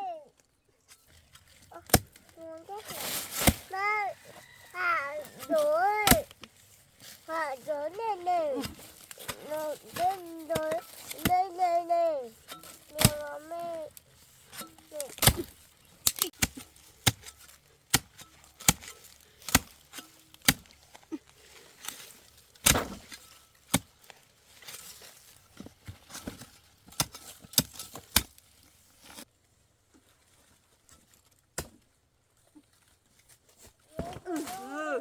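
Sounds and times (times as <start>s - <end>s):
sharp chopping strikes: 15.0s - 17.3s, 22.6s - 23.9s.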